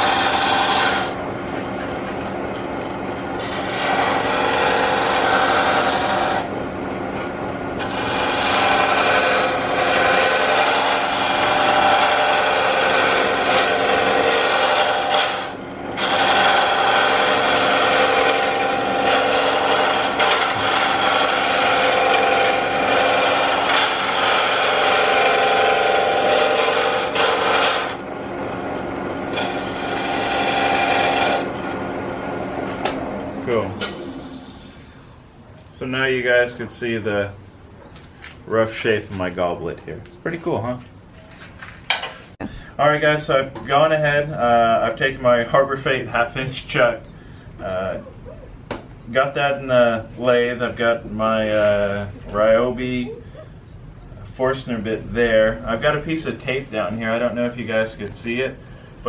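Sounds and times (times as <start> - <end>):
gouge scraping wood on lathe: 0.0 - 1.2, 3.4 - 6.5, 7.8 - 28.0, 29.3 - 31.6
lathe humming: 0.0 - 36.5.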